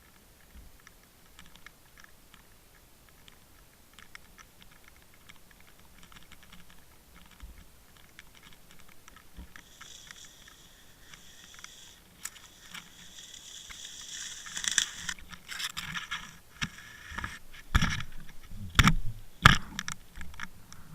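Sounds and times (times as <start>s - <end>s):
hiss: 9.6s - 15.2s
camera housing scraping: 9.6s - 18.1s.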